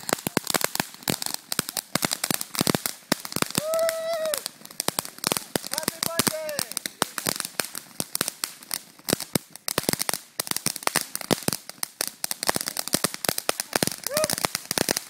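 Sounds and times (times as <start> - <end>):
firecrackers popping: 0.0 - 15.0.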